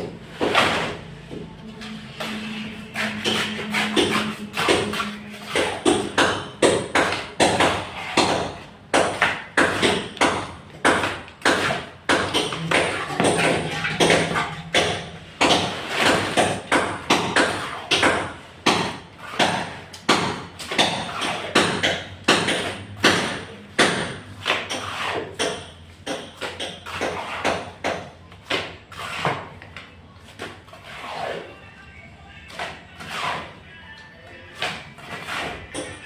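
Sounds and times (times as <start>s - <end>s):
hammer striking: 3.0s - 24.8s.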